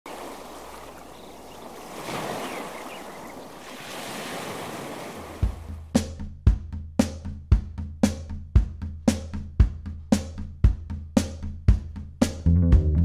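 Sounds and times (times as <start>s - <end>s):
ocean waves breaking: 0.0s - 5.8s
music with bass and drums: 5.4s - 13.0s.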